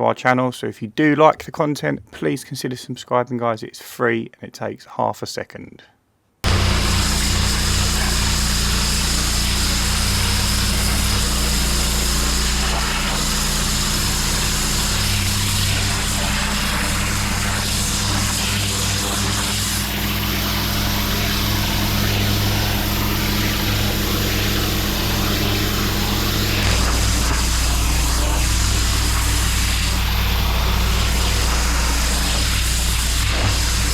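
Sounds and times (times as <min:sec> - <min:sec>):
pressure washer running: 0:06.4 - 0:33.9
water jet hissing on paving: 0:06.5 - 0:33.9.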